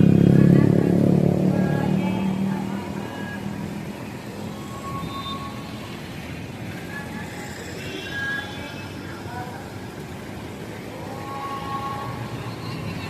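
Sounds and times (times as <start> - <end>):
vehicle engine passing by: 0.0 - 8.4.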